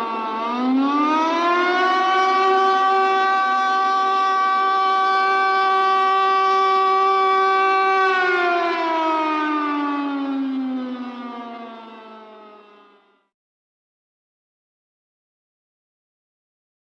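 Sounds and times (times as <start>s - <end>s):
warning siren tone: 0.0s - 13.3s.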